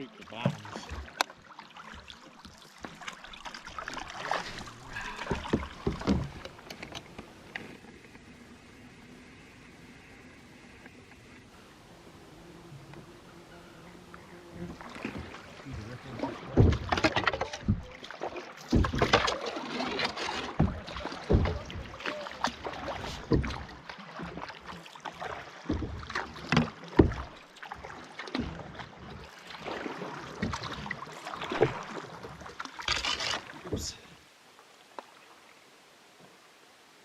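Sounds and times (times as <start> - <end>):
paddles splashing in water: 0.0 - 12.4, 13.0 - 37.0
knocks and thumps: 5.2 - 6.9, 16.6 - 17.9, 18.7 - 19.3, 20.5 - 21.9, 23.2 - 23.7, 25.7 - 27.4.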